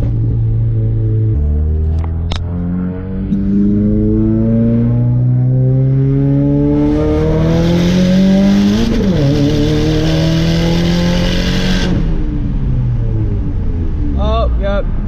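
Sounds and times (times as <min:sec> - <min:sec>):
car engine accelerating hard: 0:00.0 - 0:14.2.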